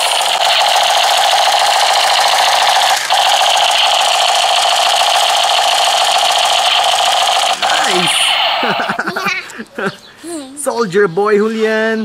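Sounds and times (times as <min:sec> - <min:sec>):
toy gun electronic rattle: 0:00.0 - 0:09.0.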